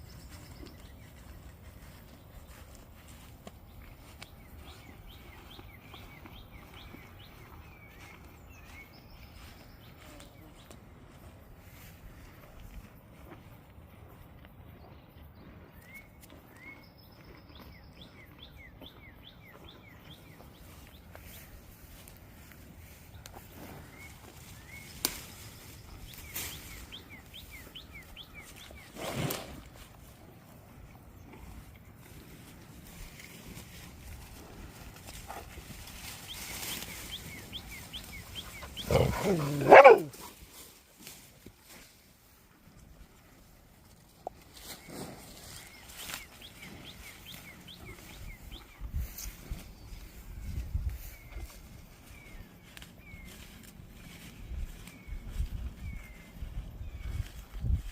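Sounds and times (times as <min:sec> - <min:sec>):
bird singing: 0:00.0 - 0:10.5, 0:14.8 - 0:21.5, 0:23.8 - 0:29.0, 0:36.1 - 0:40.2, 0:44.8 - 0:57.3.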